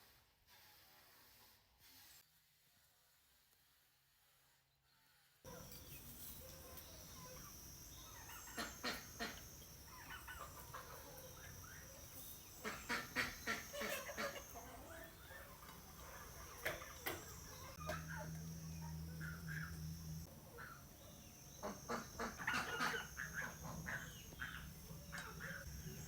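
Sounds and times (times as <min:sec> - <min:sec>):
poultry clucking and calling: 0:05.5 - 0:26.0.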